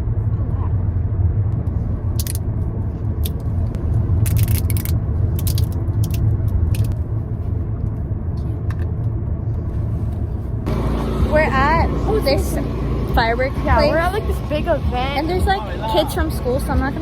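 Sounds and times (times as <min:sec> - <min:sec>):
car road rumble: 0:00.0 - 0:17.0
plastic glow sticks crackling: 0:04.3 - 0:07.0.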